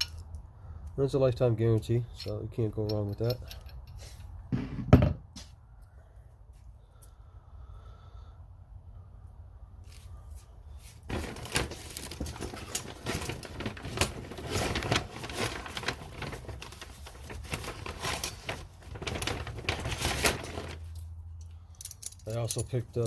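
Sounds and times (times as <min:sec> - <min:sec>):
metal hand tools clicking and rattling: 0:02.1 - 0:04.1, 0:20.4 - 0:23.0.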